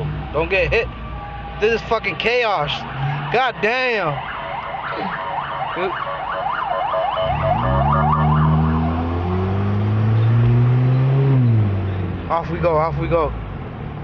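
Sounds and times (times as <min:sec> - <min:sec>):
siren yelping: 0:00.8 - 0:09.6
vehicle engine accelerating: 0:07.1 - 0:14.0.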